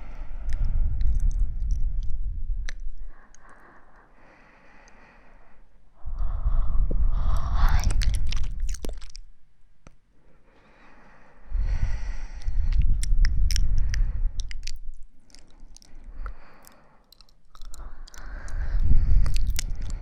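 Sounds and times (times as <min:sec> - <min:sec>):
mouth clicks: 0:00.0 - 0:03.9, 0:07.2 - 0:09.3, 0:12.3 - 0:20.0
breath blown onto microphone: 0:06.3 - 0:08.7.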